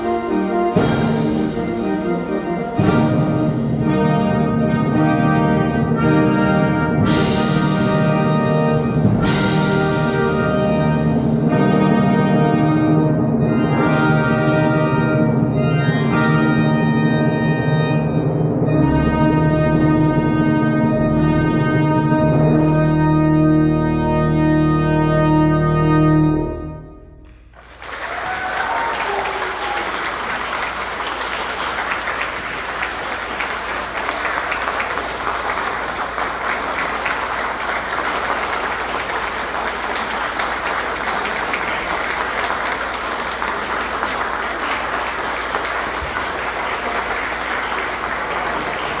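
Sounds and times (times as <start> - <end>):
pipe organ chord: 0.0 - 27.3
audience applauding: 27.4 - 49.0.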